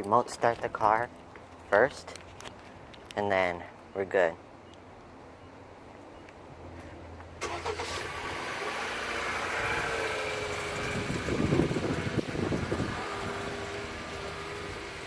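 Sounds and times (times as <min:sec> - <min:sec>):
car engine cranking: 0:07.4 - 0:15.0
car engine idling: 0:07.4 - 0:15.0.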